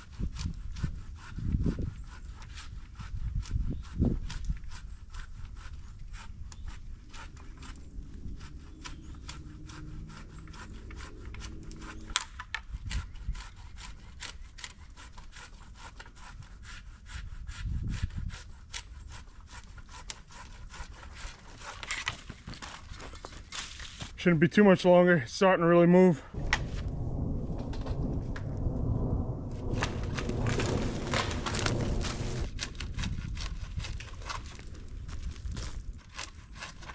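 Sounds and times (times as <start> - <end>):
saw blade rasping through wood: 0.0 - 22.3, 36.0 - 36.9
dull low thumps: 26.3 - 33.3.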